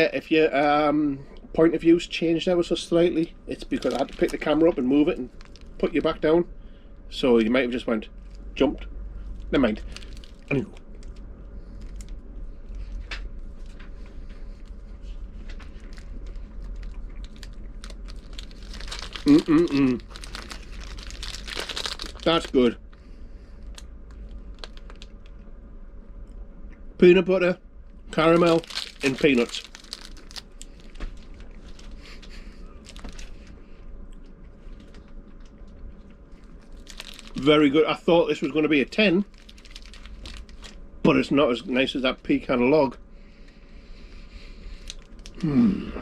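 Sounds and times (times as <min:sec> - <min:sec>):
person chewing crunchy candy: 0:03.6 - 0:04.6, 0:09.5 - 0:13.0, 0:15.7 - 0:22.8, 0:23.6 - 0:25.5, 0:28.2 - 0:33.5, 0:34.1 - 0:37.5, 0:39.3 - 0:40.8, 0:44.6 - 0:46.0
low rumble: 0:08.0 - 0:27.0
person humming mmm: 0:19.2 - 0:20.1, 0:45.4 - 0:46.0.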